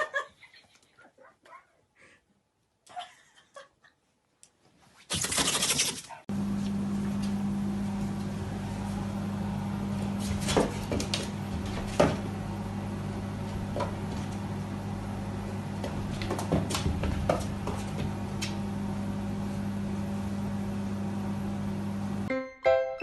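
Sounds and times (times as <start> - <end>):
low machine hum: 6.3 - 22.3.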